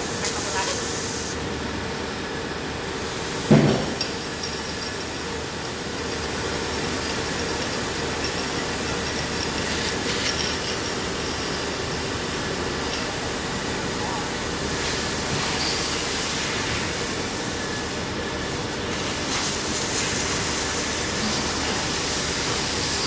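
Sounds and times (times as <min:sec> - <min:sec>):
laser cutting machine hissing: 0:00.0 - 0:01.5, 0:02.8 - 0:23.0.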